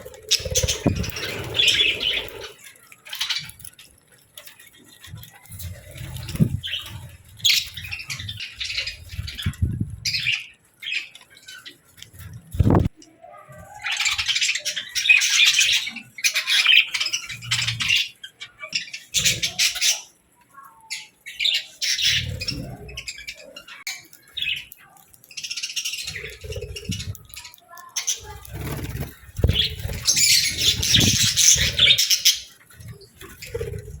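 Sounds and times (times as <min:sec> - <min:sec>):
budgerigars chirping: 0:00.0 - 0:03.6, 0:21.3 - 0:24.7, 0:28.1 - 0:32.5.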